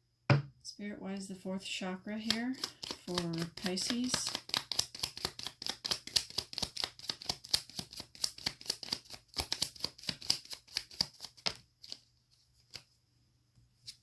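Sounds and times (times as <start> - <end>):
cards being shuffled: 2.2 - 13.0.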